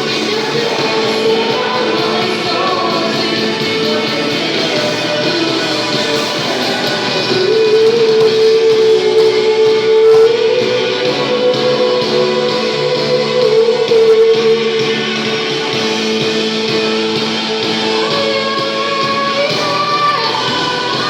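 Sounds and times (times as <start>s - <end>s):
band music: 0.0s - 21.0s.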